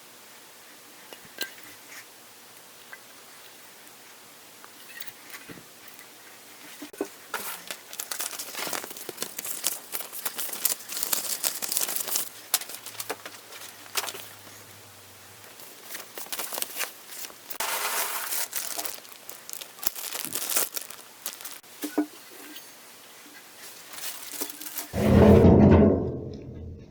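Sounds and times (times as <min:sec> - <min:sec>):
packaging crumpling and rustling: 0:07.3 - 0:14.5, 0:15.5 - 0:21.7, 0:23.6 - 0:25.0.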